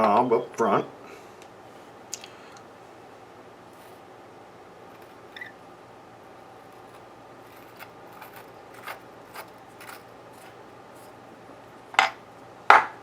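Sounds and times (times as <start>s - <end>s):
scrapes and ticks of metal and wood: 6.8s - 11.2s.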